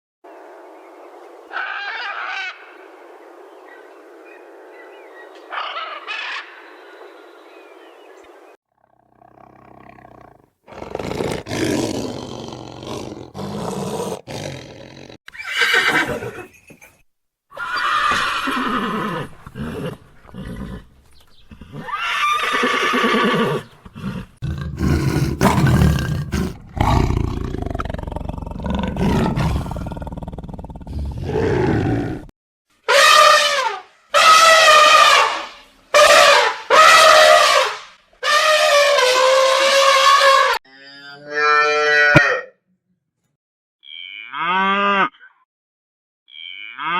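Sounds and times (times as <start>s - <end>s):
low rough animal roars: 24.4s - 32.3s.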